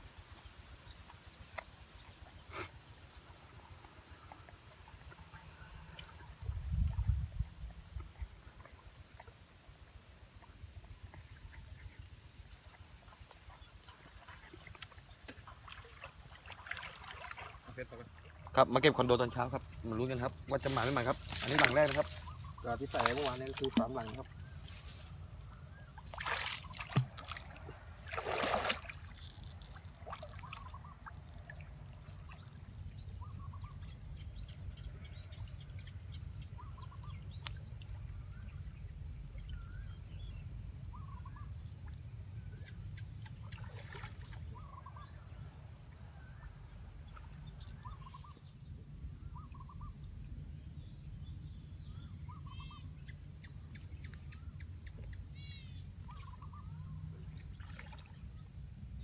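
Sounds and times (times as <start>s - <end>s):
water splashes: 12.6s - 32.5s, 43.3s - 45.0s, 57.3s - 58.3s
insect drone: 16.4s - 59.0s.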